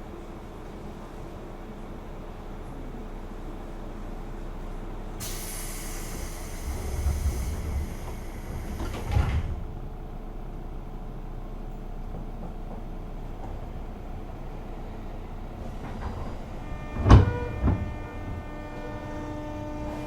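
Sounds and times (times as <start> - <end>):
compressed air hissing: 5.2 - 9.4.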